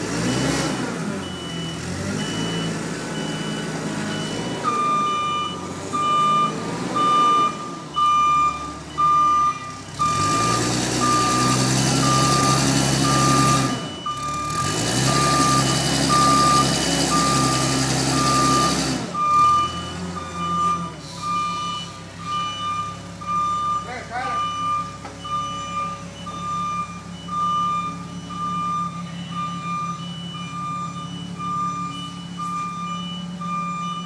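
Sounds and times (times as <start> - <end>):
reversing alarm beeping: 0.1 - 34.0.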